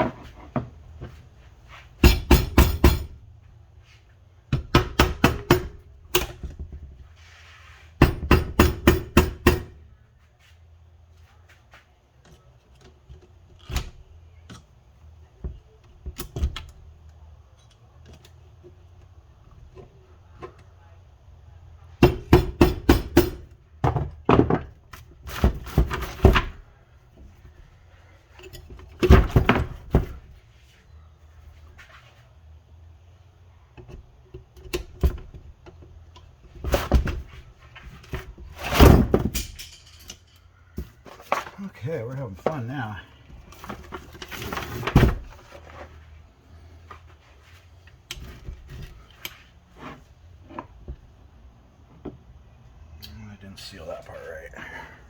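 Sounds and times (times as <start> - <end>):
light clicks of parts: 15.8 - 20.8.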